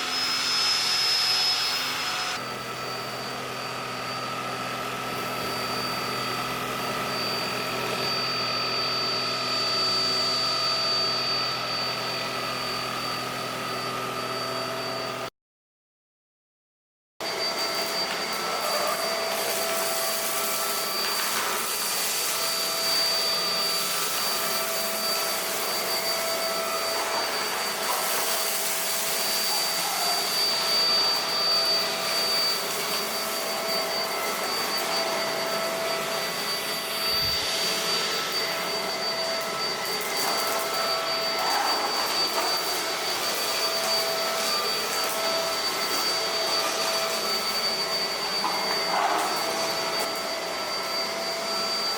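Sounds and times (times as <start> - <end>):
stick vacuum running: 17.2 - 51.9.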